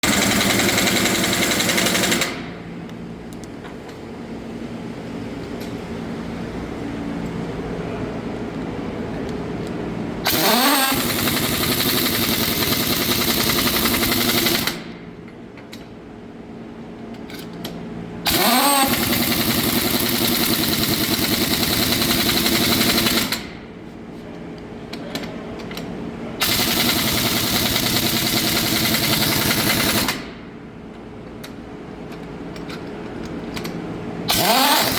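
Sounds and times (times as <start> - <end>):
engine running: 5.6 - 15.3, 17.2 - 23.7, 32.1 - 34.9.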